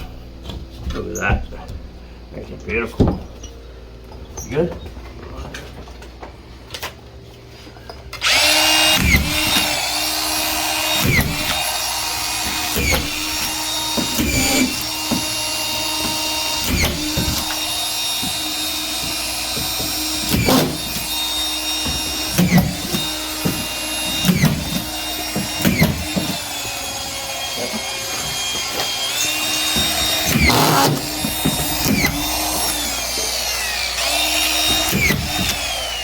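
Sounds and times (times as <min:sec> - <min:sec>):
screw gun driving screws: 0:08.2 - 0:36.0.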